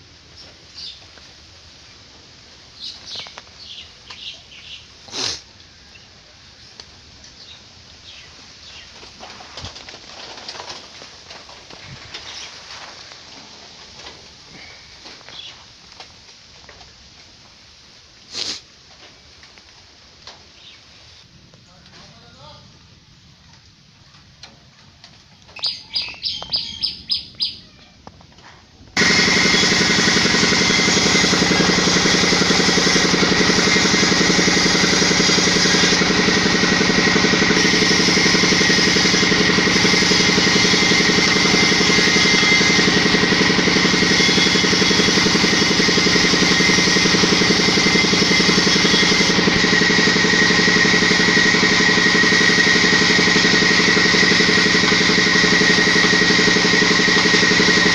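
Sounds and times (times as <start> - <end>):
bird chirping: 2.8 - 4.9, 25.6 - 27.9
steady engine running: 29.0 - 57.9.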